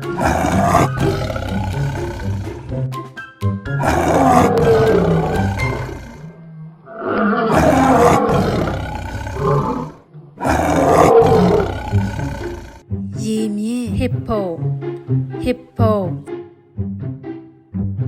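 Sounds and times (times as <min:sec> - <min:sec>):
big cat roaring: 0:00.0 - 0:02.8, 0:03.8 - 0:12.8.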